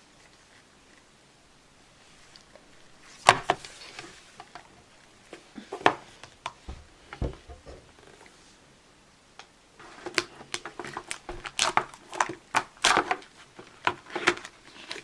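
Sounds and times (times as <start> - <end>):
packaging clicks and crinkles: 9.8 - 15.0.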